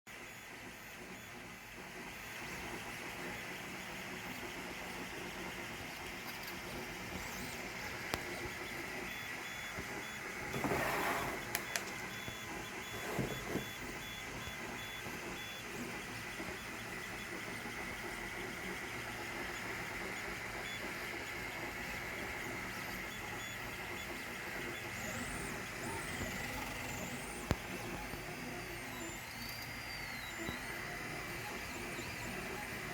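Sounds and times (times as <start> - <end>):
printer stepper motors whining: 0.1 - 32.9.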